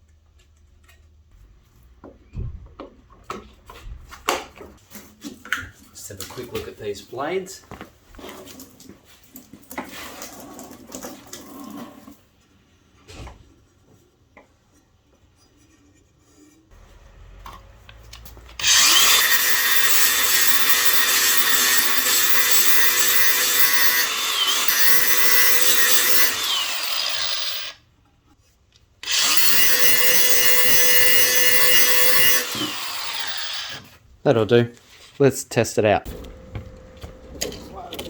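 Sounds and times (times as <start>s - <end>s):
power grinder grinding steel: 16.7s - 27.8s, 29.0s - 33.9s.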